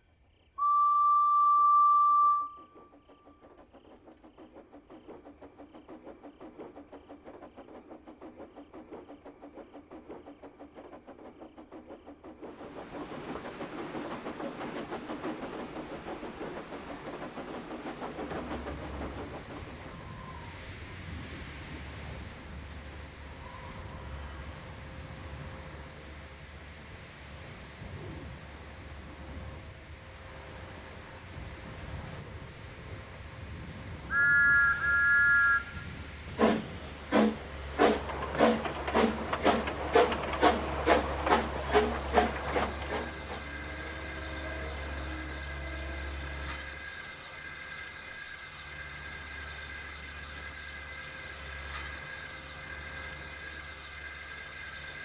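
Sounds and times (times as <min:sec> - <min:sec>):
steam locomotive chuffing: 0:00.1 - 0:55.0
steam whistle blasts: 0:00.6 - 0:02.8, 0:34.0 - 0:37.3, 0:43.4 - 0:46.8
steam hissing: 0:02.3 - 0:55.0
wheels clattering over rail joints: 0:35.6 - 0:48.2.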